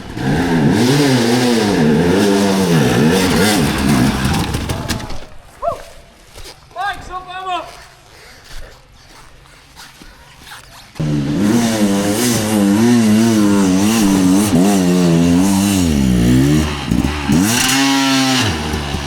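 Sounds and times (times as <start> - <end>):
dirt bike engine revving: 0.0 - 5.3, 11.0 - 19.0.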